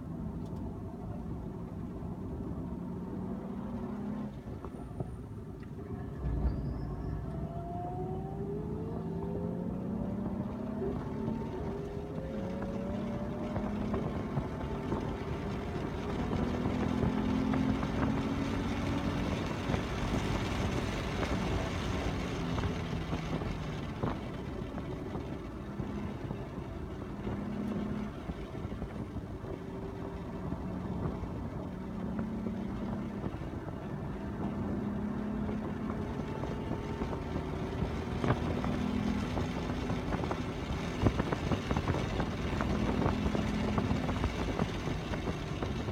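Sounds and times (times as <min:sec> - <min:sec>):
racing car engines revving: 0:00.0 - 0:45.9.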